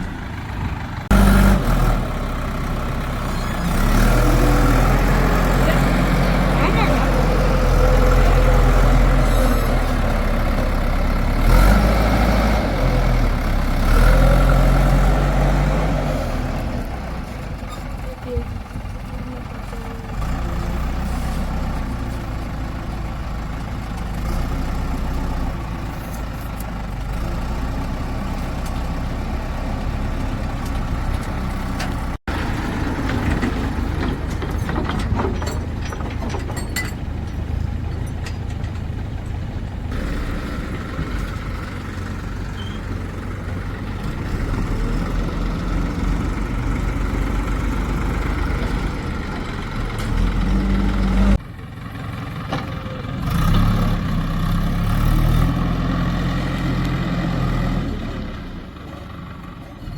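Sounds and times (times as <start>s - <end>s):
diesel engines running at low revs: 0.0s - 59.9s
clicks and knocks: 30.7s - 38.9s.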